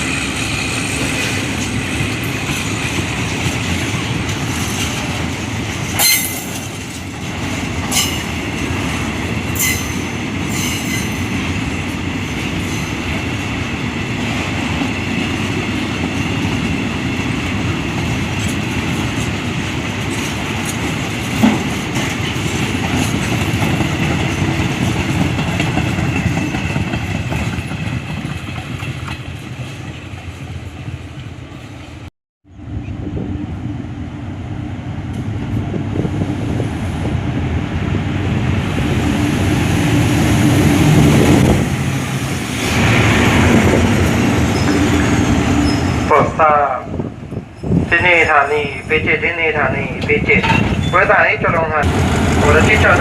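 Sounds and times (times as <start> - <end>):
wheels clacking over rail joints: 0.0 - 13.6, 14.3 - 31.3
train rumbling on rails: 0.0 - 53.0.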